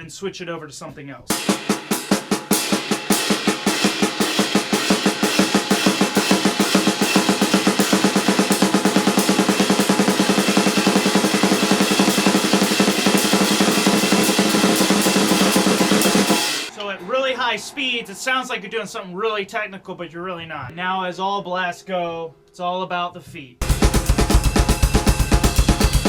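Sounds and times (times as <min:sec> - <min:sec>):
bass drum: 0:01.3 - 0:16.7, 0:23.6 - 0:26.0
drum kit blast beat: 0:01.3 - 0:18.5, 0:23.6 - 0:26.0.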